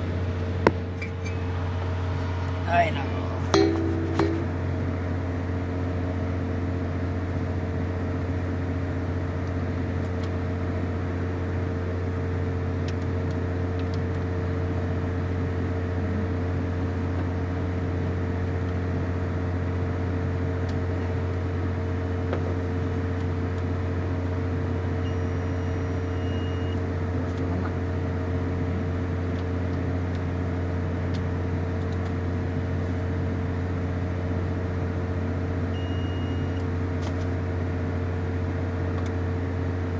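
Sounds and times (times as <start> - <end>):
constant tone: 0.0 - 5.5
low mechanical hum: 0.0 - 39.9.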